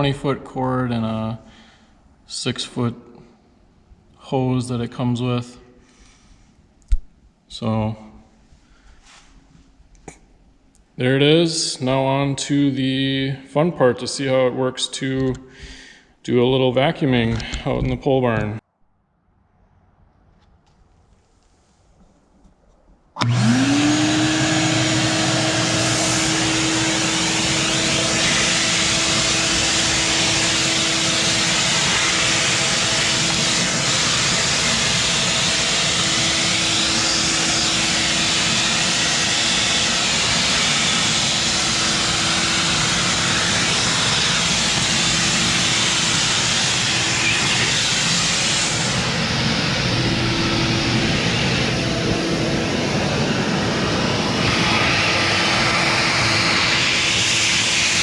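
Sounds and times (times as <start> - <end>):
shop vacuum motor whining: 23.2 - 58.0
rushing air: 23.3 - 58.0.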